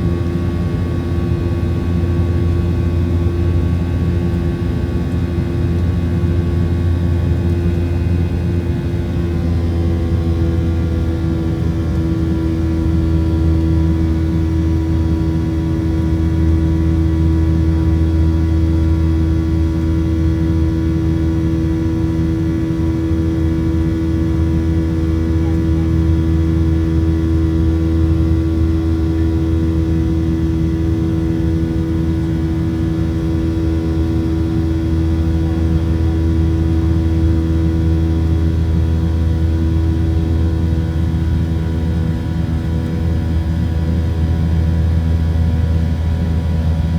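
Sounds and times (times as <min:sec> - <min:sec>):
aircraft engine drone: 0:00.0 - 0:46.9.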